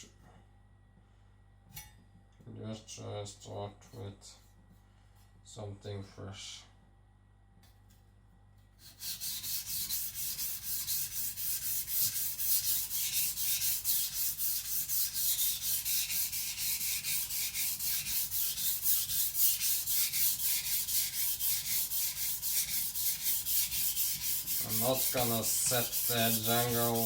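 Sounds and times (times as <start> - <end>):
cleaver blade rasping on whetstone: 8.8 - 27.0.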